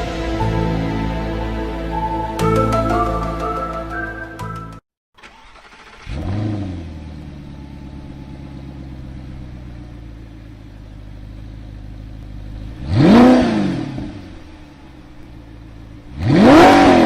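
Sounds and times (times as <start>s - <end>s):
sports car engine idling: 6.2s - 12.9s, 14.0s - 16.3s.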